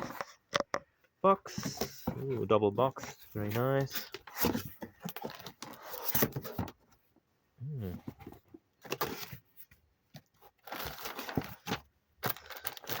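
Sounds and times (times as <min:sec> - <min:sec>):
cardboard box rustling: 0:01.5 - 0:06.8, 0:10.5 - 0:13.0.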